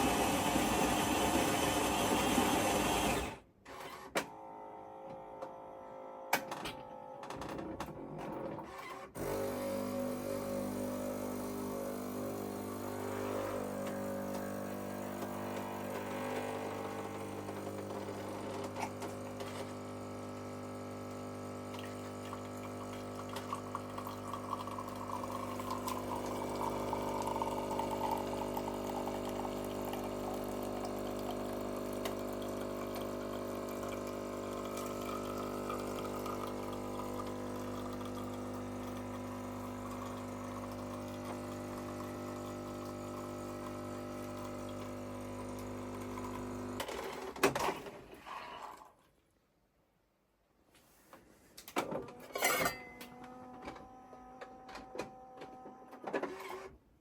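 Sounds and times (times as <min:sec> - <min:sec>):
coffee machine pump humming: 0:00.0 - 0:03.4, 0:09.2 - 0:47.3
liquid pouring: 0:21.7 - 0:46.8.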